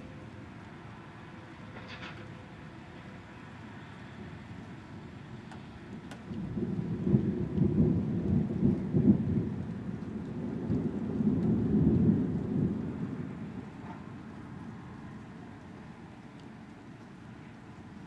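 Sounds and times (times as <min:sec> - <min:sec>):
rain hiss: 0:00.0 - 0:18.0
thunder rumbling: 0:05.7 - 0:16.0.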